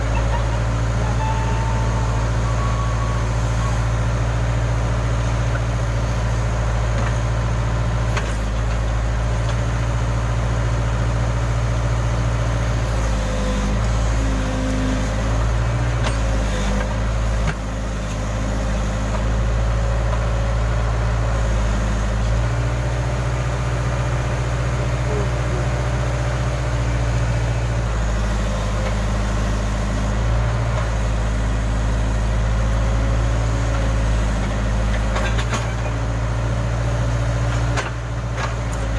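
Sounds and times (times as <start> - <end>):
hydraulic whine: 0.0 - 4.8
diesel engine running: 0.0 - 38.9.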